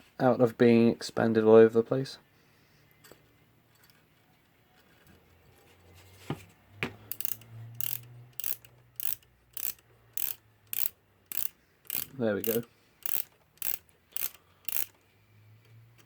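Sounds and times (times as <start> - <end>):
ratchet clicks of clock winding: 7.1 - 15.1.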